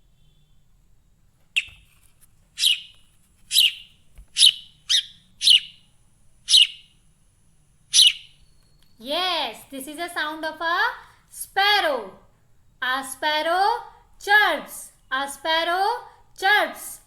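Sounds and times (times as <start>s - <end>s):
sparrow chirping: 1.6s - 1.8s, 2.6s - 7.1s, 7.8s - 9.5s.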